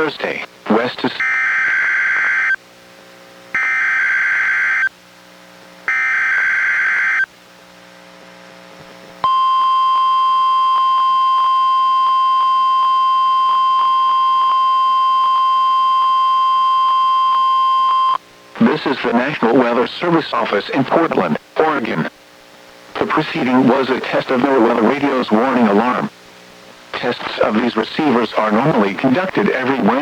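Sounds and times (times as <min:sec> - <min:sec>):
steady warning alarm tone: 0:01.2 - 0:02.6, 0:03.6 - 0:04.9, 0:05.9 - 0:07.3, 0:09.2 - 0:18.2.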